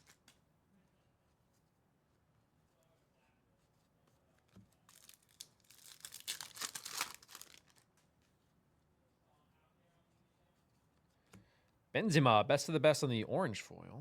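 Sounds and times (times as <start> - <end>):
foil wrapper tearing and crinkling: 0.0 - 0.3, 4.9 - 8.0.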